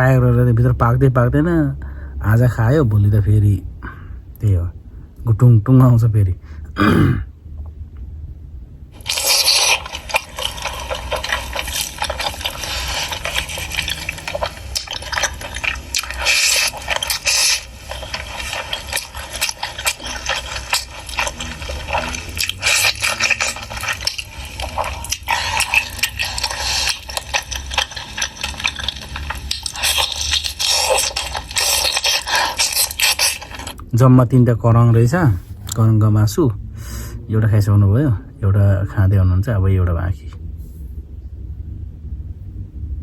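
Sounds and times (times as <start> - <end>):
wet chewing and lip-smacking: 9.0 - 33.9.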